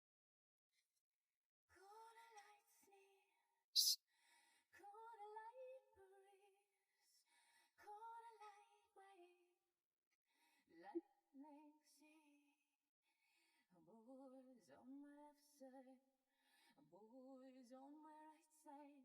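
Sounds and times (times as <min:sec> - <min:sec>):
woman singing softly: 0:01.7 - 0:04.0, 0:04.7 - 0:09.6, 0:10.6 - 0:12.6, 0:13.6 - 0:16.1, 0:16.7 - 0:19.0
short sharp hiss: 0:03.8 - 0:04.0.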